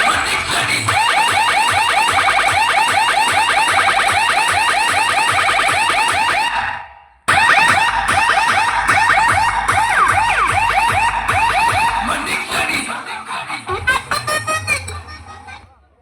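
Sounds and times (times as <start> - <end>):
electronic siren chirps: 0.9 - 6.6, 7.3 - 12.2.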